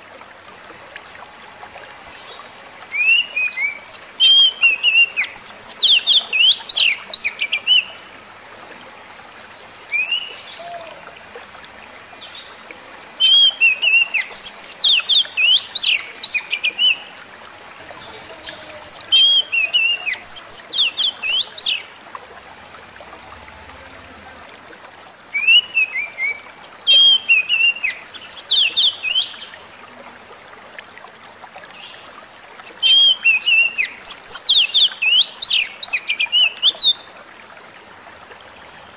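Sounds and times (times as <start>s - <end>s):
bird singing whistled phrases: 2.9s - 8.0s, 9.5s - 11.0s, 12.8s - 17.0s, 18.4s - 21.8s, 25.4s - 29.3s, 32.6s - 37.0s.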